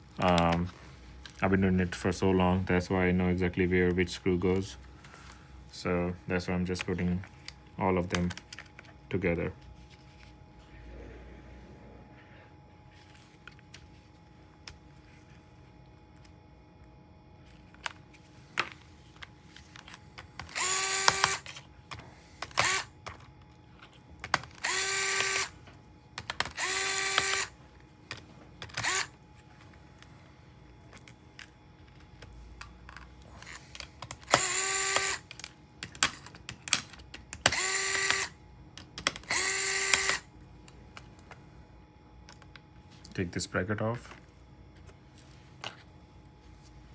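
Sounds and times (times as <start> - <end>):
electric screwdriver whirring: 19.8 - 21.6, 22.4 - 23.0, 24.4 - 25.6, 26.3 - 27.6, 28.7 - 29.2, 33.4 - 36.3, 37.4 - 38.4, 39.1 - 40.3.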